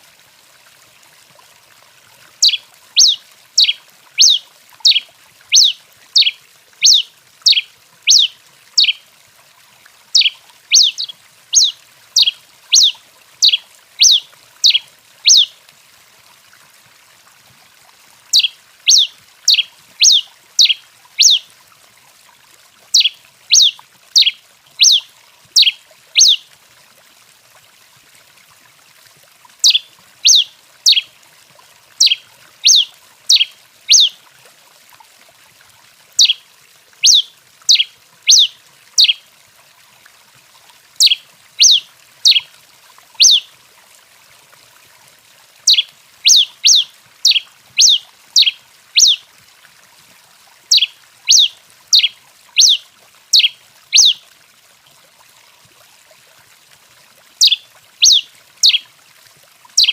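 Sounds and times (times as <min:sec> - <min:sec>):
finch calling: 0:02.4 - 0:09.0, 0:10.1 - 0:15.5, 0:18.3 - 0:21.4, 0:22.9 - 0:25.0, 0:25.6 - 0:26.4, 0:29.6 - 0:31.1, 0:32.0 - 0:34.2, 0:36.2 - 0:36.4, 0:37.0 - 0:39.2, 0:41.0 - 0:42.5, 0:43.2 - 0:43.5, 0:45.7 - 0:49.2, 0:50.7 - 0:54.2, 0:57.4 - 0:58.8.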